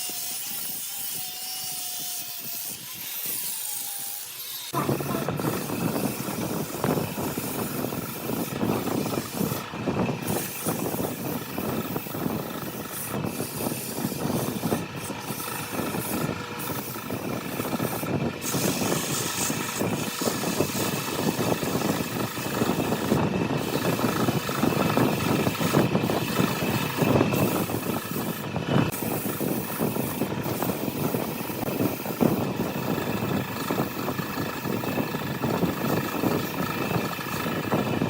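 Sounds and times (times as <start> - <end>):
tool scraping spinning wood: 0.0 - 38.0
wood lathe running: 0.0 - 38.0.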